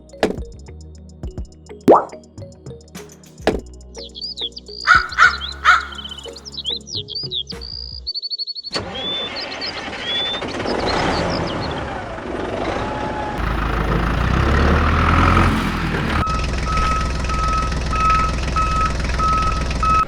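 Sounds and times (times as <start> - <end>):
vehicle engine humming: 4.9 - 6.3, 13.4 - 20.0
reversing beeper: 16.2 - 20.0.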